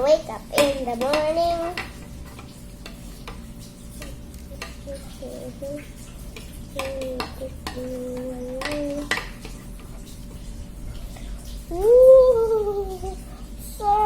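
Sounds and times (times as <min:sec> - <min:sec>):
utensil stirring slime: 0:00.0 - 0:14.0
child humming: 0:11.7 - 0:14.0.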